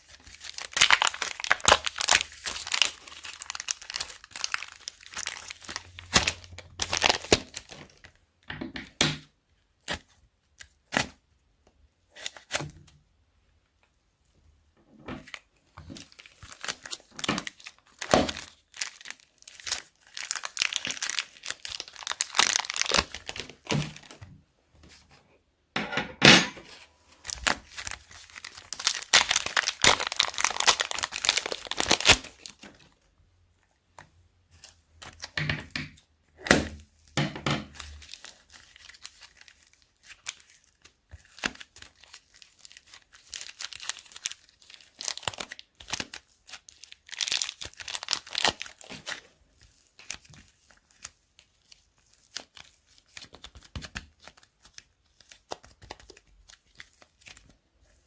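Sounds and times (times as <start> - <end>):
plastic bags crinkling: 0.0 - 8.1, 15.3 - 24.2, 27.1 - 33.0, 37.7 - 58.0.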